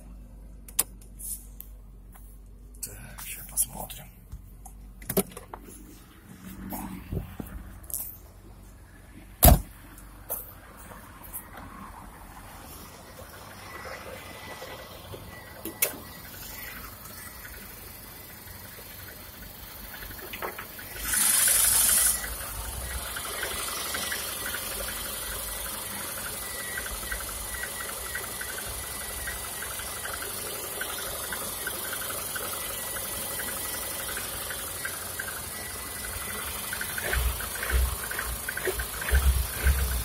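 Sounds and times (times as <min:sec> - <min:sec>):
car engine idling: 0:00.0 - 0:40.0
fast even engine knocking: 0:36.4 - 0:40.0.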